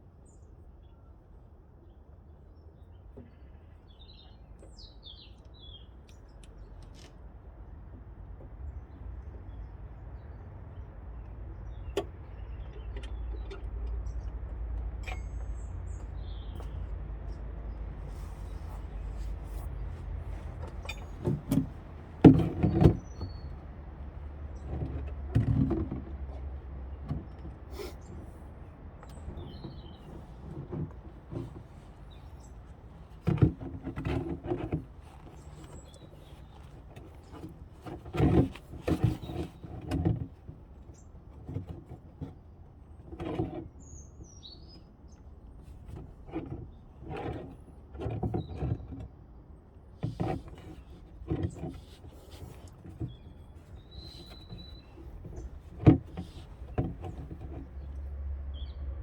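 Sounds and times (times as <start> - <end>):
irregular knocks and clatters: 20.2 - 23.5.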